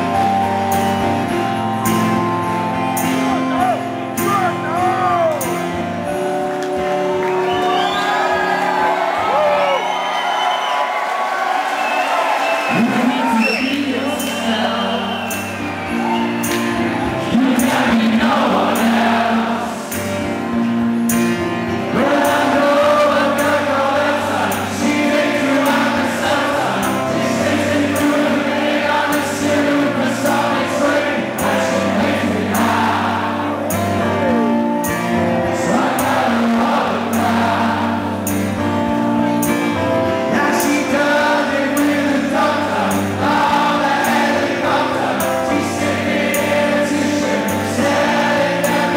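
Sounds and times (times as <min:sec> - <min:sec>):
live rock band playing: 0:00.0 - 0:09.4, 0:12.8 - 0:48.9
person singing: 0:17.2 - 0:20.2, 0:21.9 - 0:38.4, 0:39.4 - 0:48.9.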